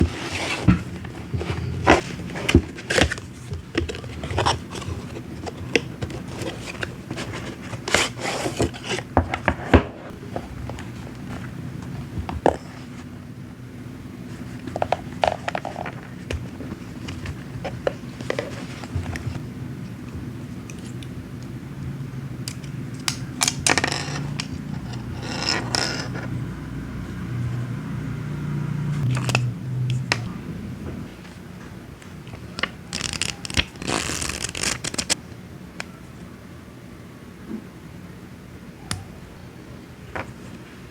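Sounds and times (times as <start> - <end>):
box scraping: 23.8 - 26.3
packaging rustling: 32.4 - 35.2.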